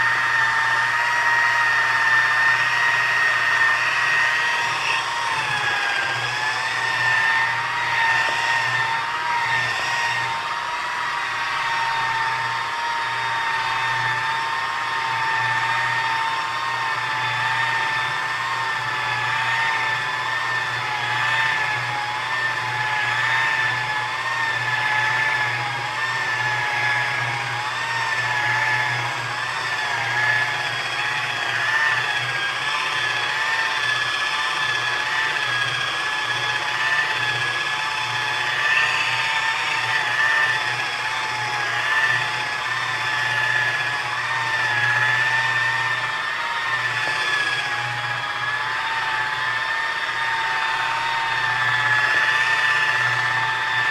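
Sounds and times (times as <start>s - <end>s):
electric polisher whine: 0.0s - 53.9s.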